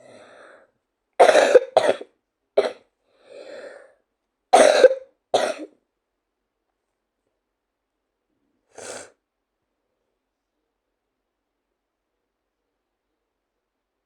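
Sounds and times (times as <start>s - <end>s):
soft breath: 0.0s - 0.8s, 3.0s - 4.1s
girl coughing: 1.2s - 2.8s, 4.6s - 5.7s.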